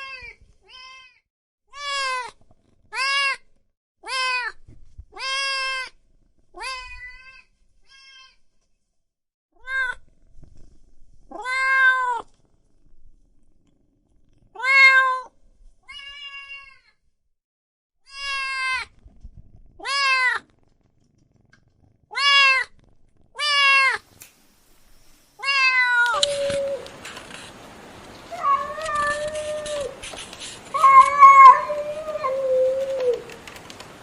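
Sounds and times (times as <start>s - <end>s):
cat meowing: 11.3s - 12.2s, 14.6s - 15.3s, 22.1s - 22.7s, 23.4s - 24.0s, 25.4s - 27.0s, 28.1s - 30.0s, 30.6s - 33.4s
steady hiss: 24.0s - 34.0s.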